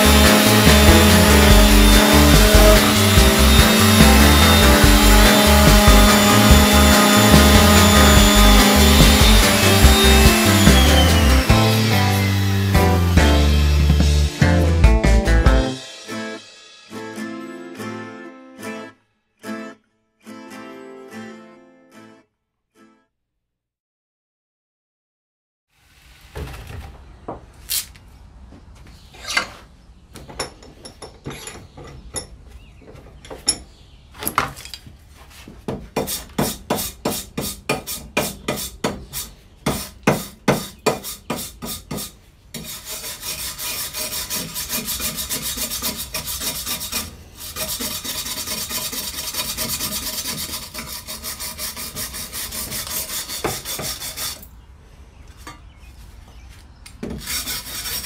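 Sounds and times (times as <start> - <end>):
metal file rasping on steel: 0.0 - 13.2, 36.0 - 54.5, 57.2 - 58.0.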